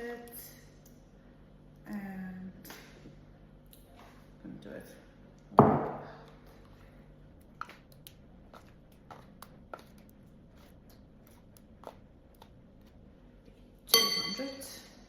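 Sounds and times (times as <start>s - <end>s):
spoon tapping container: 13.9s - 14.5s.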